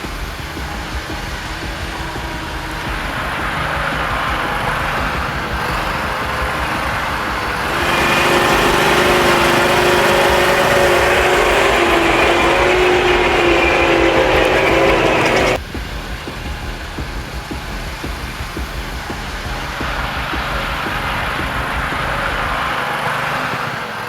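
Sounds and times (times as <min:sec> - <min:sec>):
heavy machine engine revving: 0:00.0 - 0:15.6.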